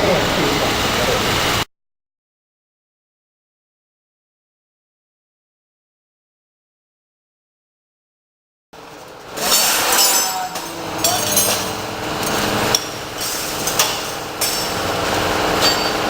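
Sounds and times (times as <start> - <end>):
steady noisy background: 0.0 - 1.6, 8.8 - 16.0
sharp knocks and clatter: 9.3 - 16.0
voices: 9.4 - 16.0.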